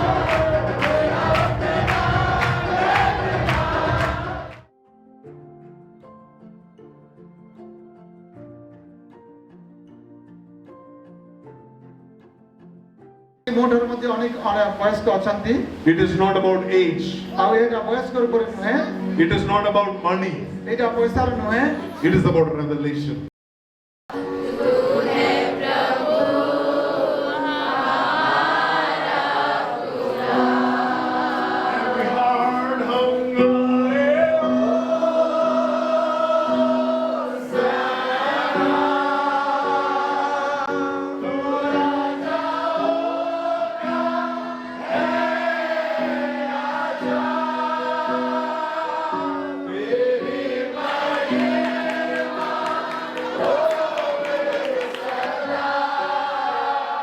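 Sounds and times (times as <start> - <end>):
choir singing slow song: 0.0 - 4.7, 24.1 - 57.0.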